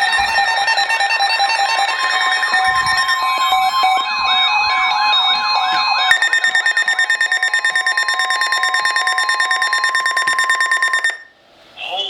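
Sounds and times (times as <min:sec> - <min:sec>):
rapidly pulsing alarm beep: 0:00.0 - 0:11.3
steady high tone: 0:00.0 - 0:11.3
siren-like alert tone sweeping: 0:06.1 - 0:11.2.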